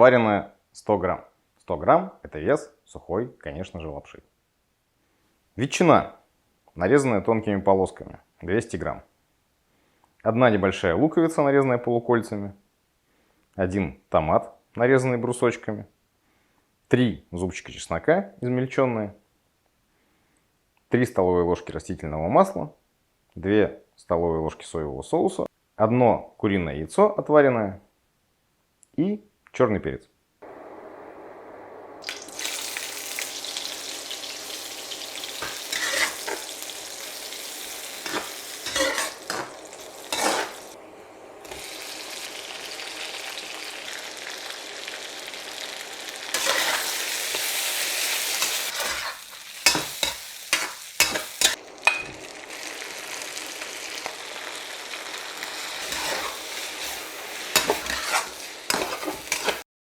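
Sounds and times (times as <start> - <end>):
food sizzling in hot oil: 31.6 - 59.6
spatula clacking against pan: 48.8 - 52.2.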